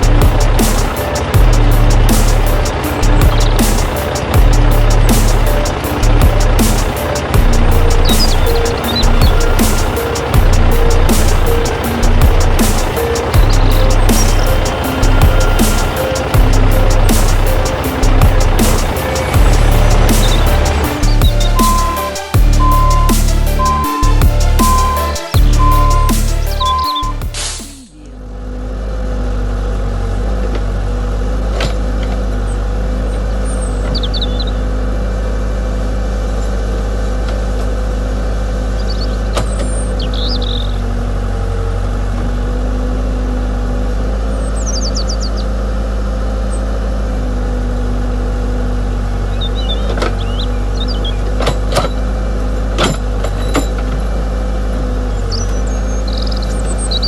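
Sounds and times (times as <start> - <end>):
birds chirping: 6.8 - 27.2.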